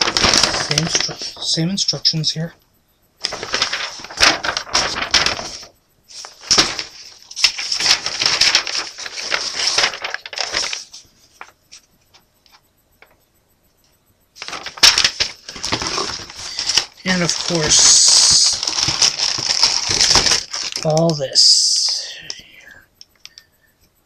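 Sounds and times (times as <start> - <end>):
plastic bags crinkling: 0.0 - 1.6, 3.2 - 11.5, 14.4 - 21.2.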